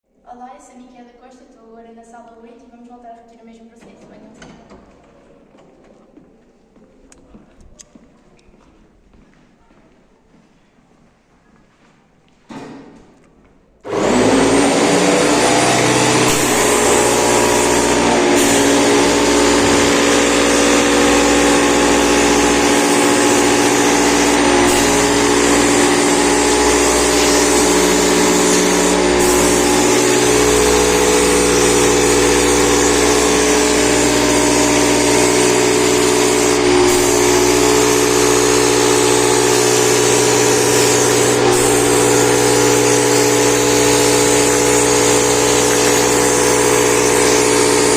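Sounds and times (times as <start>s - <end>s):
air compressor running: 13.8s - 47.9s.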